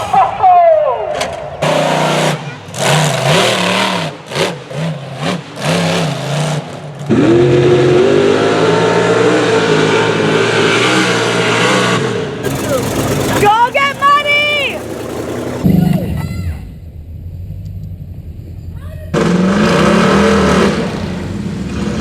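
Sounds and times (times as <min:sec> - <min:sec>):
off-road engines revving: 0:01.0 - 0:22.0
loud engine revving hard: 0:01.6 - 0:16.2, 0:19.1 - 0:22.0.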